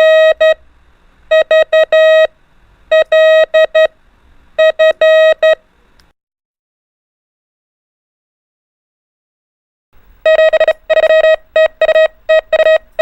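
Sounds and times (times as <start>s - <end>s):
morse code beeps: 0.0s - 0.6s, 1.3s - 2.3s, 2.9s - 3.9s, 4.6s - 5.6s, 10.2s - 13.0s.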